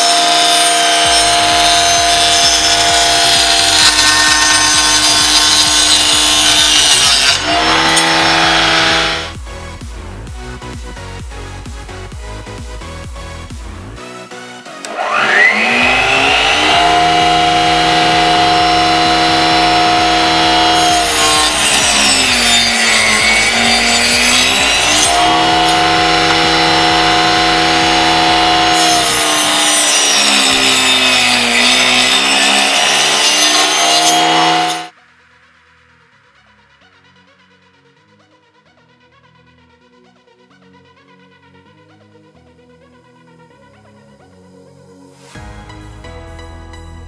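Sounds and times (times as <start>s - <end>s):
table saw whining: 0.0s - 9.4s, 14.7s - 34.9s
electronic music: 7.3s - 31.4s, 34.1s - 47.0s.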